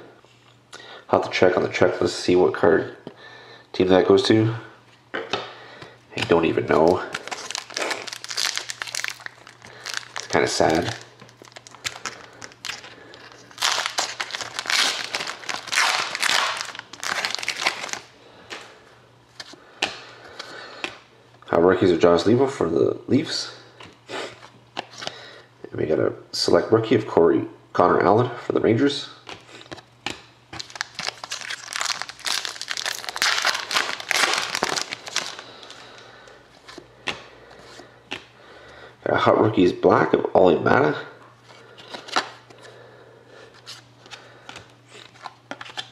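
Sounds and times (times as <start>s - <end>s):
plastic wrapper crinkling: 6.2s - 18.7s, 30.5s - 36.8s.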